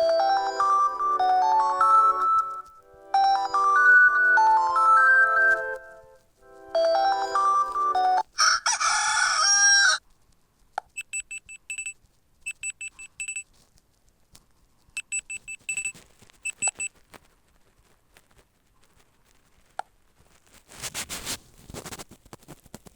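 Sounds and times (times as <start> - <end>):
melodic ringtone: 0.0 - 8.3
recorded rooster crowing: 8.3 - 10.0.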